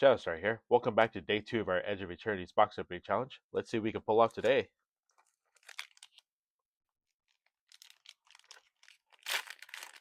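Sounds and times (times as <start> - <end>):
foil wrapper crinkling and tearing: 5.2 - 6.3, 7.3 - 10.0.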